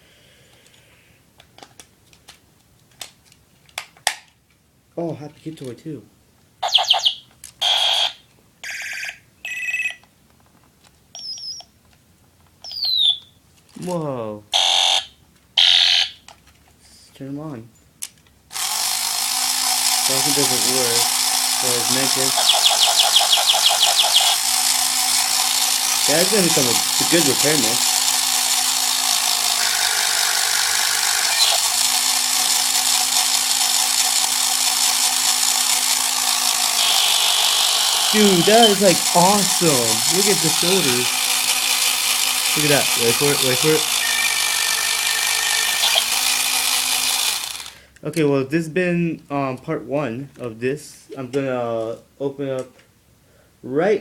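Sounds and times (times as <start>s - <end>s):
toy robot bleeping and buzzing: 6.6s - 9.9s, 14.6s - 16.2s, 18.6s - 47.7s.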